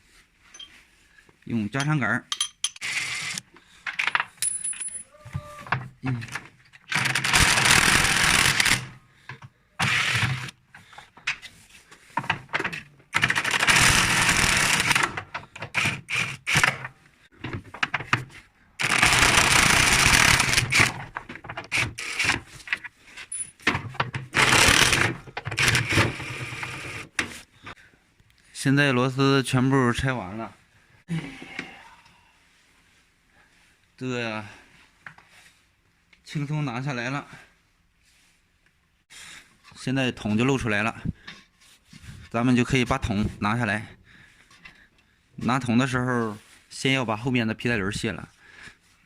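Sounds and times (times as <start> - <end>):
electric impact wrench: 6.9 - 8.9, 9.8 - 10.5, 13.2 - 16.8, 18.8 - 21.0, 21.7 - 22.4, 24.3 - 27.1.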